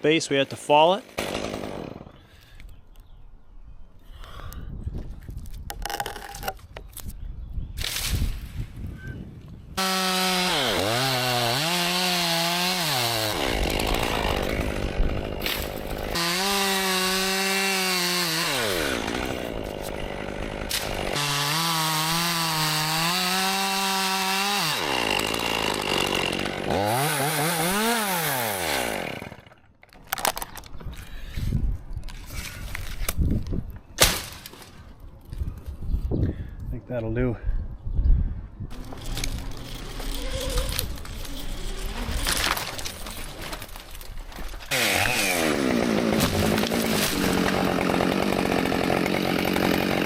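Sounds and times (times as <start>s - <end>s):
chainsaw cutting wood: 1.1s - 2.2s, 9.8s - 30.3s, 38.7s - 50.0s.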